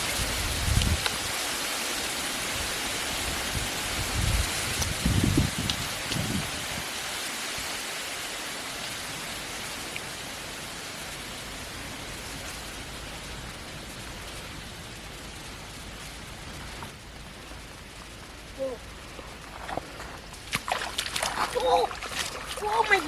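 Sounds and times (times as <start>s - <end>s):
rain hissing: 0.0s - 23.0s
faint ticks: 9.8s - 10.2s.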